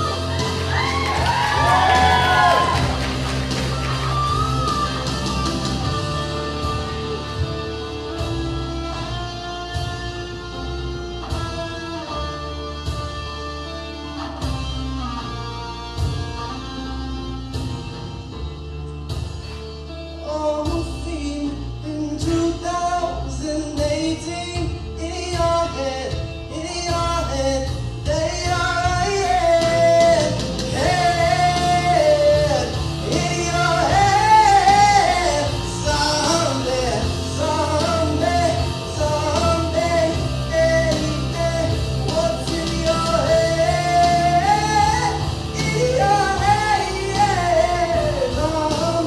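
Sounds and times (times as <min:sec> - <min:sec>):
person singing rock song: 0:00.0 - 0:10.3, 0:20.2 - 0:49.0
guitar and drums: 0:00.0 - 0:49.0.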